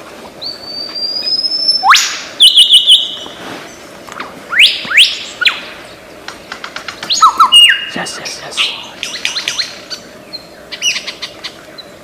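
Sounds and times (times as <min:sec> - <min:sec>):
lyrebird whistling: 0:00.5 - 0:03.2, 0:04.5 - 0:05.6, 0:07.0 - 0:07.9.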